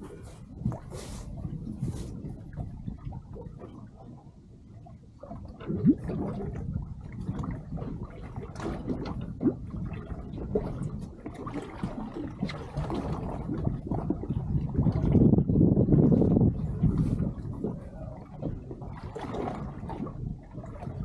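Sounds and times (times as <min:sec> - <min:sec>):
water sloshing against hull: 0:00.0 - 0:21.0
small knocks and splashes: 0:05.2 - 0:21.0.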